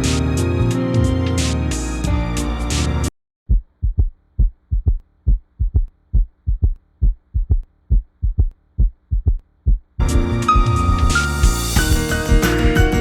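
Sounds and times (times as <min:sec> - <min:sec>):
heartbeat gallop thumps: 0:03.5 - 0:13.0.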